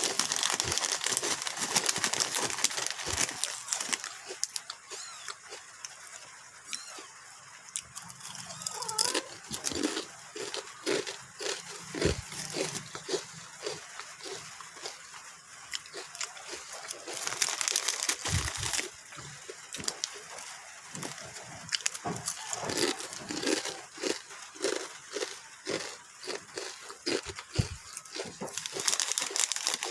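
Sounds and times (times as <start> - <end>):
person chewing crunchy snack: 0.0 - 7.1, 7.7 - 29.9
wet mouth noises: 16.1 - 18.8.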